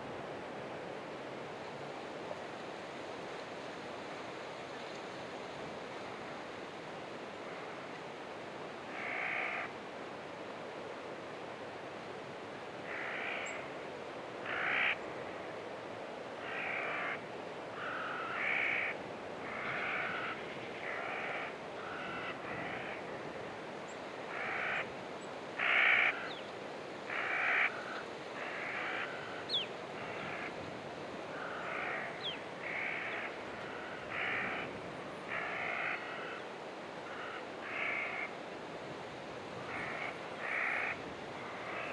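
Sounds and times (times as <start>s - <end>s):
crow-like caws: 8.9s - 9.7s, 12.8s - 13.7s, 14.4s - 15.0s, 16.4s - 23.3s, 24.3s - 24.9s, 25.6s - 26.4s, 27.1s - 30.6s, 31.3s - 38.4s, 39.7s - 41.9s.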